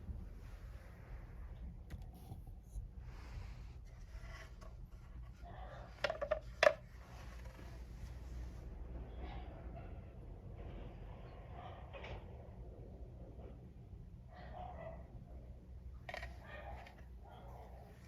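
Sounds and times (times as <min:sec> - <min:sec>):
distant dog barking: 0:05.4 - 0:06.2, 0:11.4 - 0:12.2, 0:14.3 - 0:15.5, 0:16.3 - 0:18.0.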